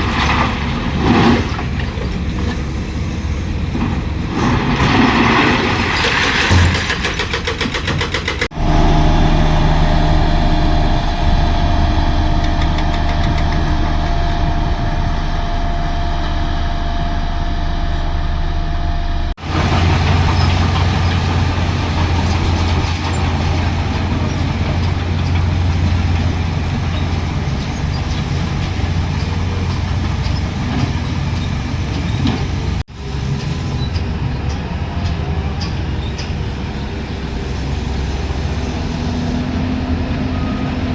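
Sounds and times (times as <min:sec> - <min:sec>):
diesel engines droning: 0:08.2 - 0:40.9
steady whine: 0:08.5 - 0:19.6.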